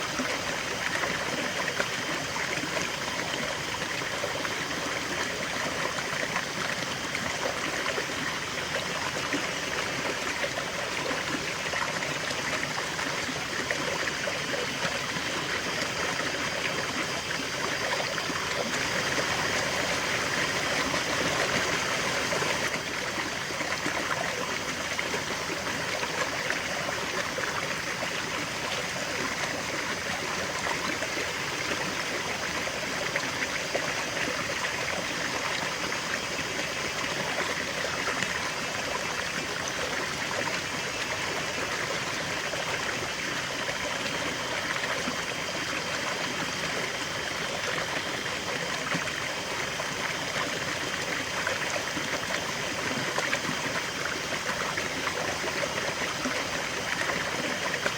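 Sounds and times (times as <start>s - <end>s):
river water flowing over stones: 0.0s - 57.9s.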